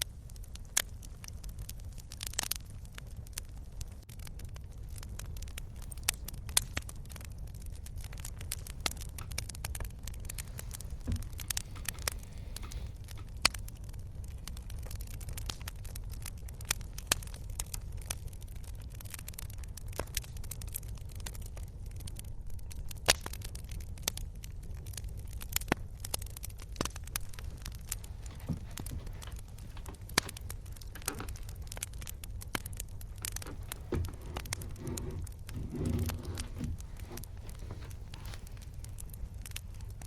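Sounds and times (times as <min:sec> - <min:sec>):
wood fire crackling: 0:04.6 - 0:13.8, 0:26.0 - 0:40.0.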